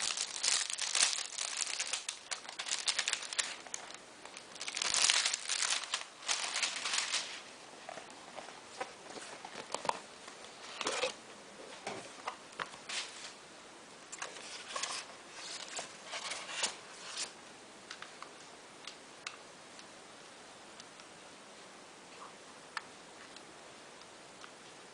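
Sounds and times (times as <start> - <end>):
handling rustling and scraping: 4.6 - 10.0, 10.6 - 11.2, 14.1 - 17.4.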